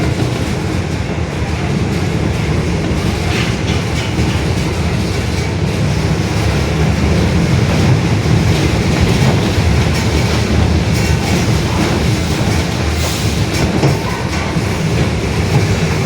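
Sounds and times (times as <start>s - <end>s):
bus engine rumbling: 0.0s - 16.0s.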